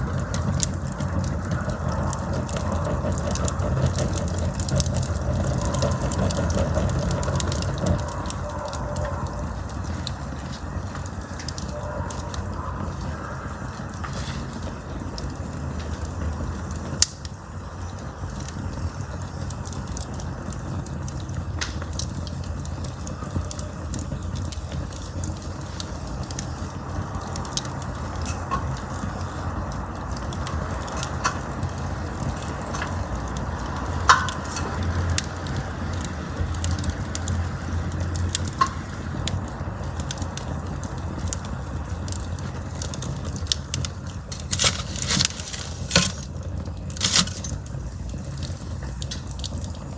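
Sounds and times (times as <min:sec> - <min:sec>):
campfire rumble: 0:00.0 - 0:49.9
wood crackling and popping: 0:00.0 - 0:49.9.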